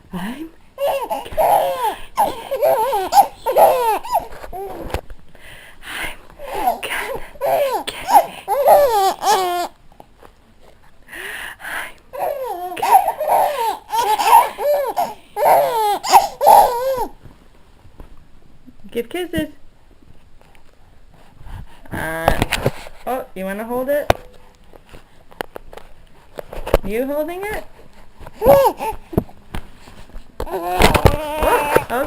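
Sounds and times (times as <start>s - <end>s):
baby laughing: 0.8s - 4.9s, 6.4s - 9.8s, 12.2s - 17.2s, 28.4s - 29.0s.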